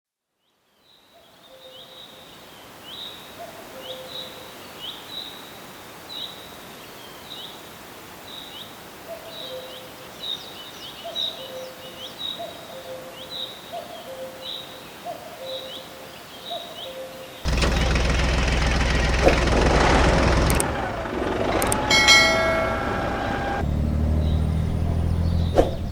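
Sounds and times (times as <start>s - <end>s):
bird high falling chirps: 21.2s - 25.9s.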